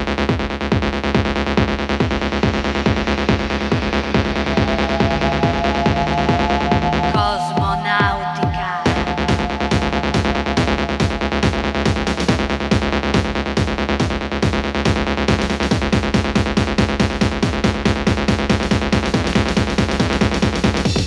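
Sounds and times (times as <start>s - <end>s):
synthesizer chords: 2.2s - 13.8s
held synth tone: 3.0s - 13.5s.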